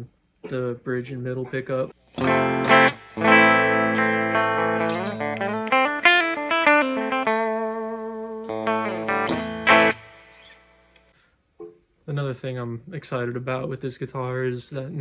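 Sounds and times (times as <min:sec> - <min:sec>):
clean electric guitar chords: 0:02.1 - 0:11.1
guitar single-note run: 0:02.2 - 0:11.1.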